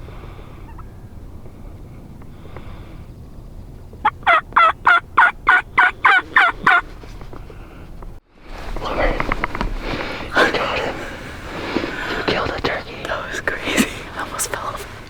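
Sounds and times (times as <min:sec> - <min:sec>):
wild turkey yelping: 0:00.6 - 0:01.1, 0:04.0 - 0:07.7.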